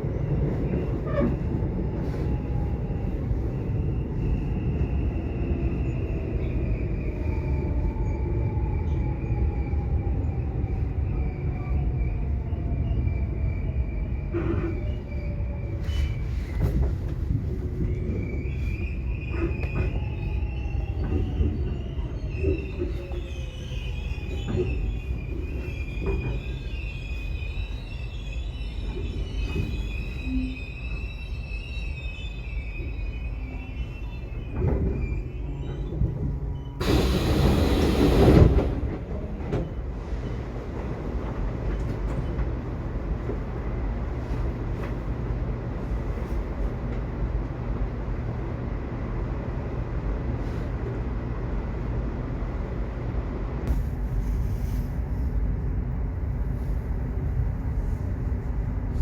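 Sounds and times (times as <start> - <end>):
train wheels squealing: 0.0 - 47.0
subway train rumble: 0.0 - 59.0
loud hissing rush: 36.8 - 38.6.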